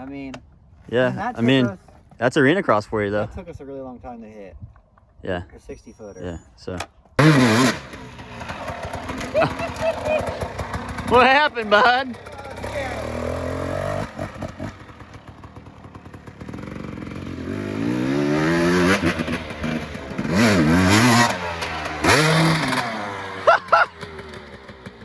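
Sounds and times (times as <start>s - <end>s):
dirt bike engine revving: 7.2s - 25.0s.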